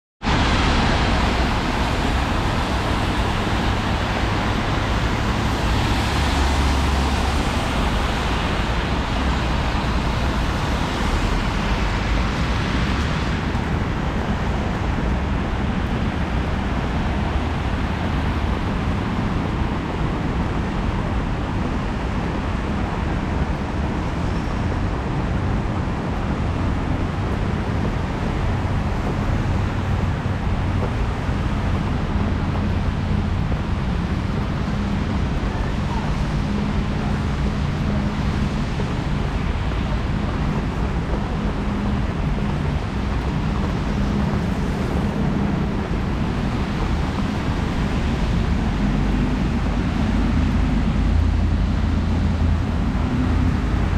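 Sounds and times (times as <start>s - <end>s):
cars and buses on wet road: 0.2s - 53.9s.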